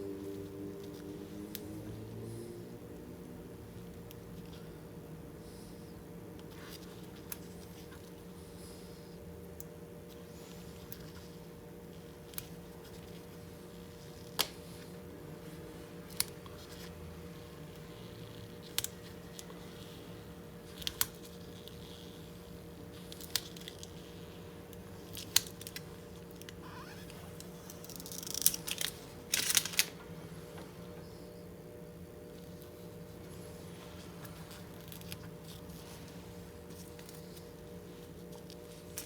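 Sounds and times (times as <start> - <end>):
faint steady hum: 0.0 - 39.0
film crackling and tearing: 27.7 - 29.9.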